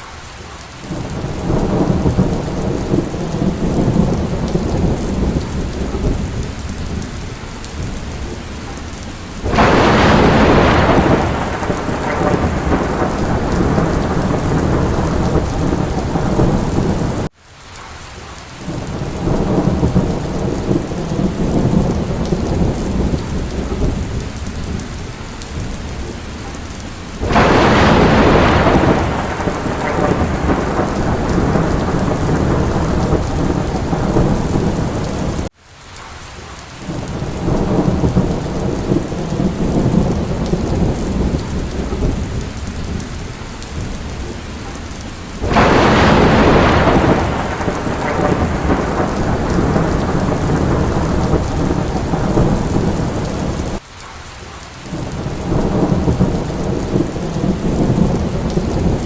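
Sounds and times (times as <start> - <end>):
steady rain: 0.0 - 59.0
loud thunderclap: 0.9 - 7.2, 9.4 - 17.3, 18.7 - 26.6, 27.2 - 35.5, 36.9 - 44.8, 45.4 - 53.8, 54.9 - 59.0
rolling thunder: 0.9 - 17.3, 18.7 - 35.5, 36.9 - 53.8, 54.9 - 59.0.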